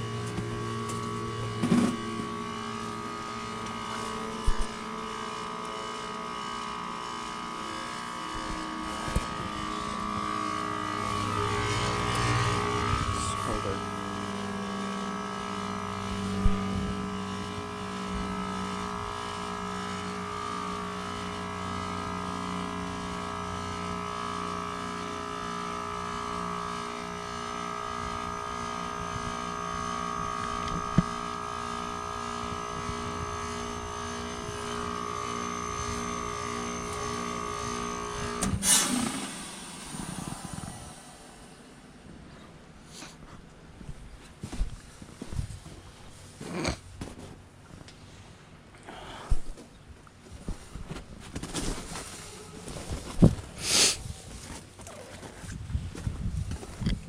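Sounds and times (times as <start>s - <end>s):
heat pump compressor hum: 0.0s - 57.0s
loud whoosh of refrigerant: 7.0s - 19.3s, 30.1s - 42.4s.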